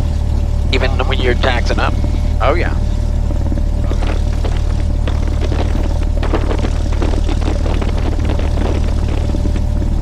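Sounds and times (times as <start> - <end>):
propeller plane engine droning: 0.0 - 10.0.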